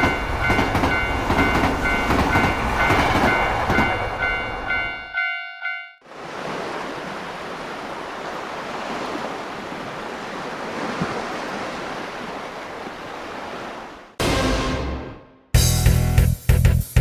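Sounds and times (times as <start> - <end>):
sea waves washing: 6.0 - 15.0.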